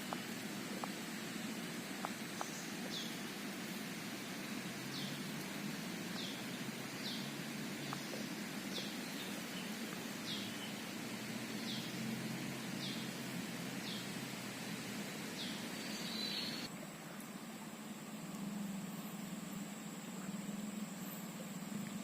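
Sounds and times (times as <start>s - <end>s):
water flowing: 0.0s - 22.0s
bird chirping: 6.1s - 10.9s, 11.6s - 12.0s, 15.3s - 16.7s.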